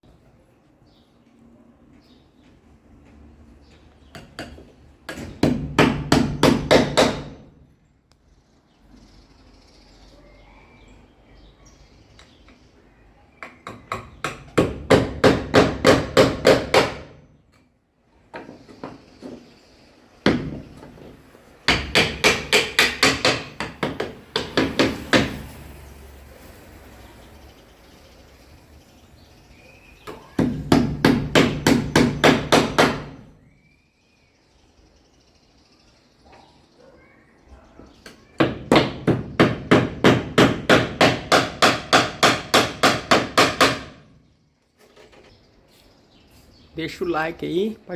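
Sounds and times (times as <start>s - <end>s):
rotary hammer hammering: 4.1s - 7.5s, 13.4s - 17.2s, 21.6s - 25.4s, 30.0s - 33.2s, 38.0s - 44.1s.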